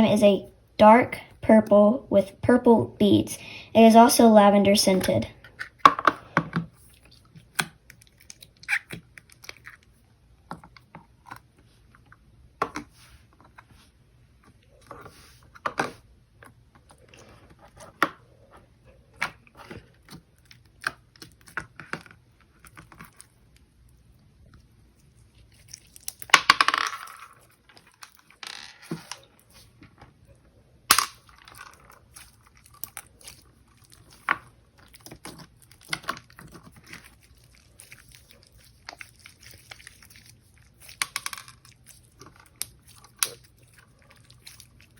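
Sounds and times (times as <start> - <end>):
slime squelching: 3.4 - 12.0, 19.2 - 26.3, 31.2 - 44.9.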